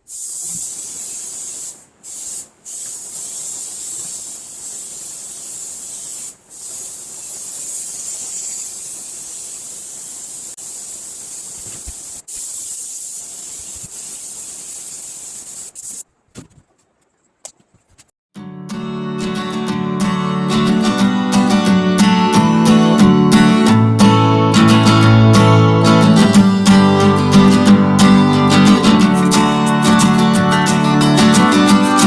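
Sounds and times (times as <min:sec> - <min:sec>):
spray gun hissing: 0:00.0 - 0:16.0.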